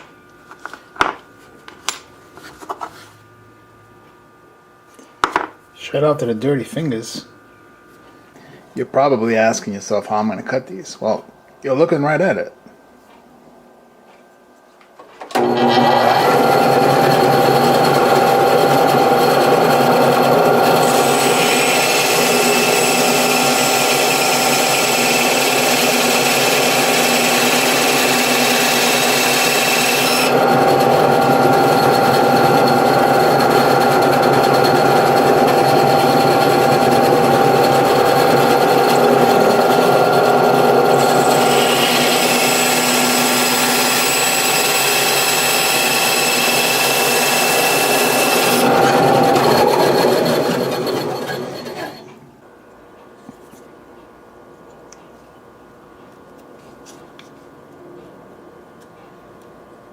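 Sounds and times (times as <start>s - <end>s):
power tool cutting noise: 15.3s - 52.1s
small power tool running: 15.3s - 52.1s.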